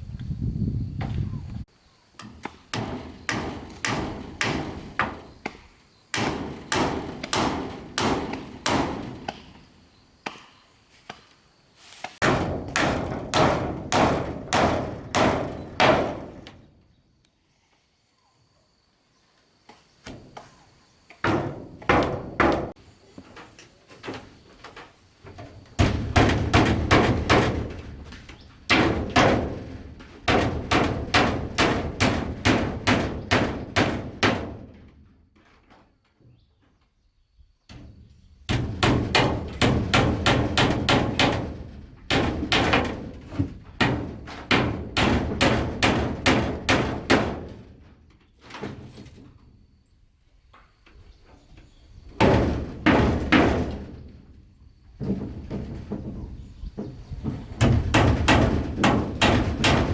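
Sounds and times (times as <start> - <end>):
hammering on wood: 2.2 - 9.6, 12.2 - 16.6, 21.2 - 22.8, 25.8 - 34.7, 38.5 - 47.6, 56.8 - 59.9.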